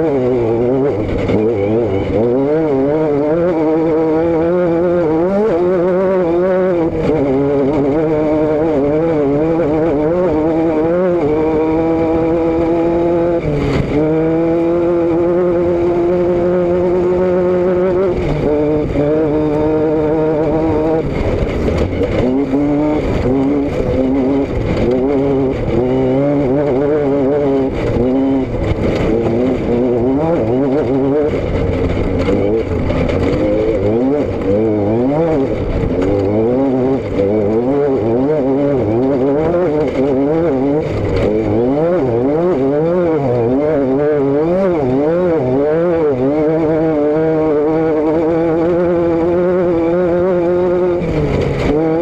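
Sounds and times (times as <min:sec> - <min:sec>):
vehicle engine and exhaust revving: 0:00.0 - 0:52.0.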